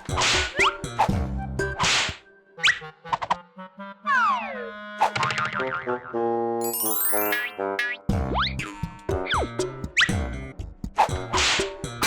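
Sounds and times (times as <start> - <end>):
tone gliding downward: 6.6 - 7.8
cartoon music: 6.6 - 8.1.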